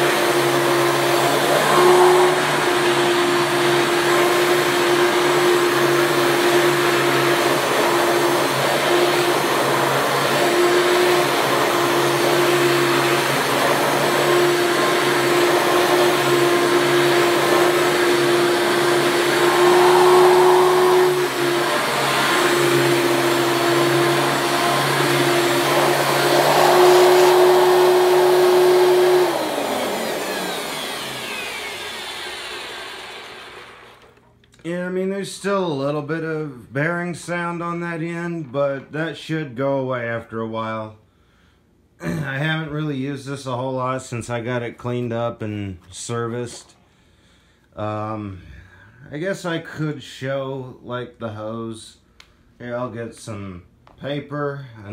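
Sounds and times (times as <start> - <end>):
vacuum motor winding down: 0.0 - 34.2
upright vacuum cleaner running: 0.0 - 34.3.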